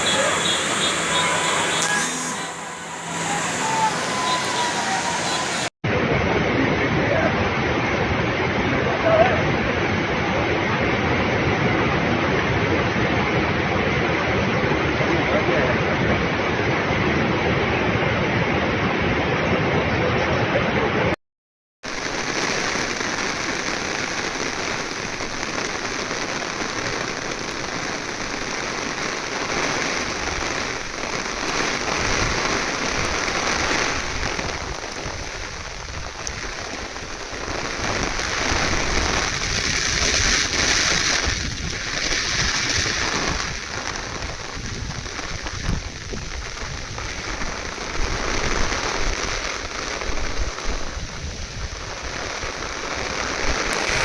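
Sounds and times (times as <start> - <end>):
heavy rain falling: 0.0 - 5.7, 21.9 - 54.0.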